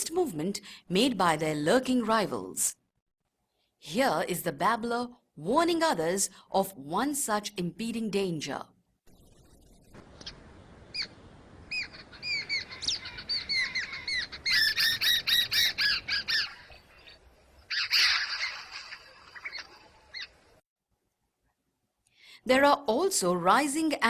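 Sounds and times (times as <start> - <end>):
bird alarm call: 10.2 - 20.4.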